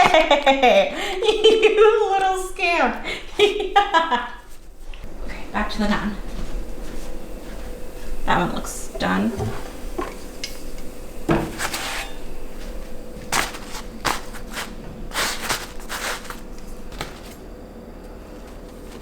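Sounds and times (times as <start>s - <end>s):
faint steady hum: 0.0s - 19.0s
cookware and utensils clattering: 5.1s - 17.5s
scraping on a pan: 8.0s - 17.0s.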